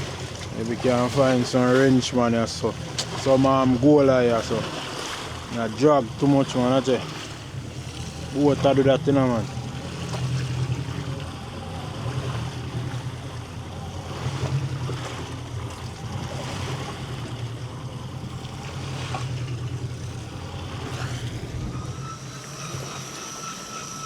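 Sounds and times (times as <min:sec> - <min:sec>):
boat motor humming: 0:00.0 - 0:24.0
water noise: 0:00.0 - 0:24.0
wind on microphone: 0:18.3 - 0:23.4.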